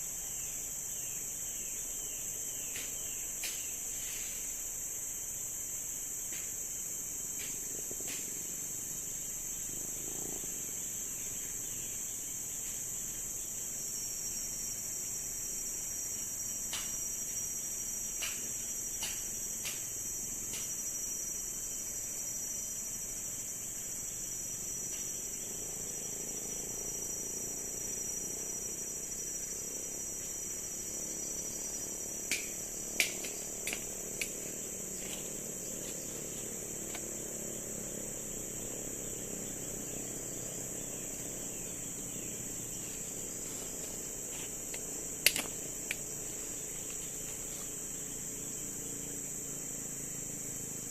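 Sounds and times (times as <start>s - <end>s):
insects chirping: 0.0s - 50.9s
sharp clicks and knocks: 44.7s - 46.0s.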